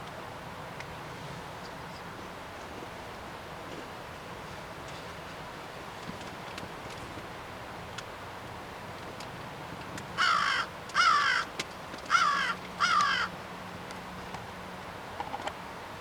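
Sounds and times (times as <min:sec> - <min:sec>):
crow cawing: 0:10.2 - 0:11.5, 0:12.1 - 0:13.4.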